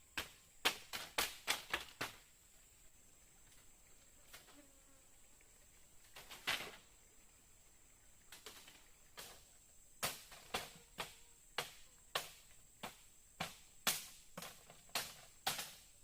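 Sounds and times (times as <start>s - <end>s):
high insect drone: 0.0s - 16.0s.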